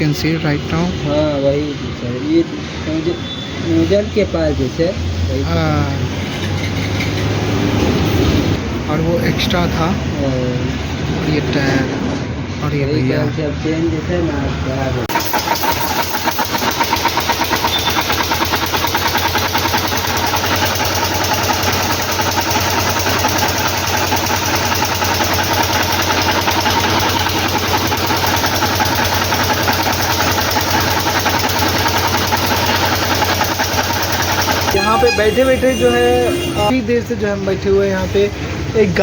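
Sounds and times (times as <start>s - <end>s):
engine idling: 15.1s - 38.7s.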